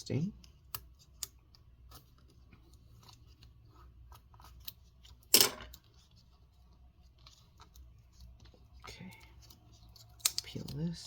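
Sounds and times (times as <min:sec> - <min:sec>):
hand clicks and scratches: 0:00.4 - 0:11.0.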